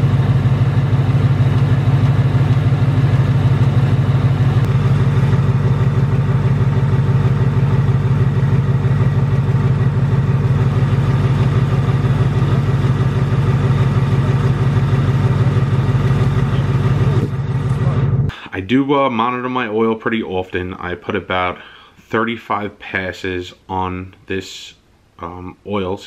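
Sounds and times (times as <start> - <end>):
car engine idling: 0.0 - 18.3
engine ticking: 0.0 - 18.3.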